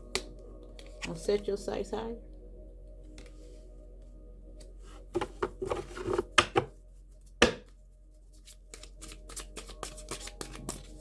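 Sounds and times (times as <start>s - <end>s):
cards slapping and flicking: 8.5s - 11.0s.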